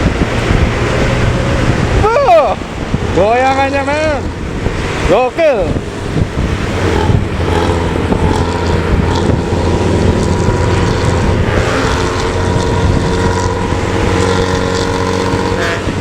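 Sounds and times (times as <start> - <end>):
diesel bus engine running: 0.0 - 16.0
loud low exhaust note: 5.8 - 16.0.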